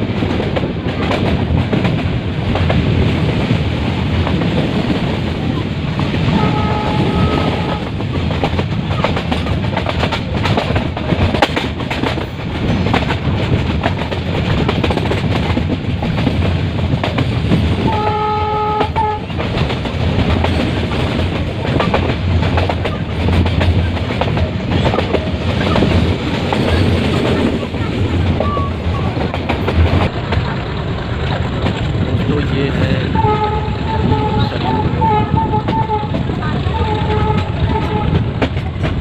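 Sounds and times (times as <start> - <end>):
train rumbling: 0.0 - 39.0
wheels clattering over rail joints: 0.0 - 39.0
locomotive horn blasts: 6.3 - 7.9, 17.9 - 19.3, 33.2 - 38.3.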